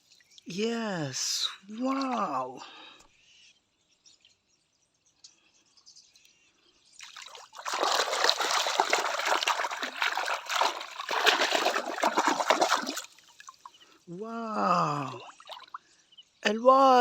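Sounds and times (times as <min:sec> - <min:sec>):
water splashing over plastic toys: 0:01.9 - 0:02.4, 0:07.0 - 0:13.7, 0:14.8 - 0:15.8.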